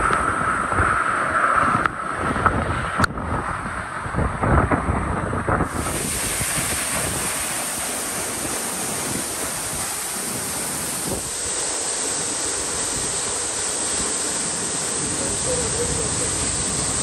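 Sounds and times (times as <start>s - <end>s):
waterfall rushing: 5.7s - 17.0s.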